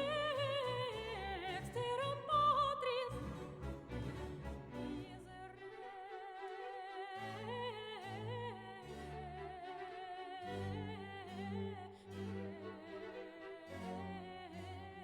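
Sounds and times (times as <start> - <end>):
operatic voice with vibrato: 0.0 - 15.0.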